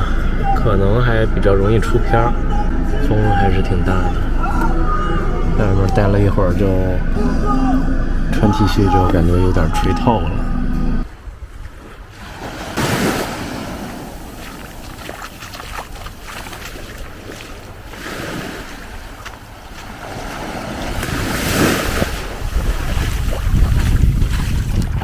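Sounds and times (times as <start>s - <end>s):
sea waves breaking: 0.0s - 25.0s
wind rumbling on microphone: 10.7s - 25.0s.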